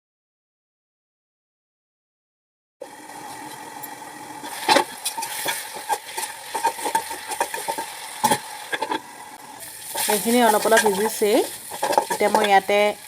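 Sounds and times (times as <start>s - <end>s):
food sizzling in a pan: 2.8s - 13.0s
utensil scraping and knocking pan: 4.6s - 9.0s, 9.9s - 12.6s.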